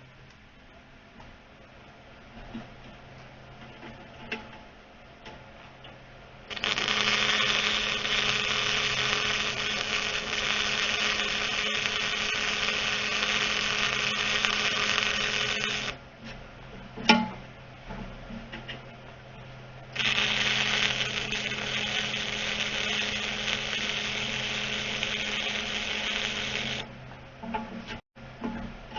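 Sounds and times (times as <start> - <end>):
welder arc sizzling: 6.5 - 16.0, 20.0 - 26.9.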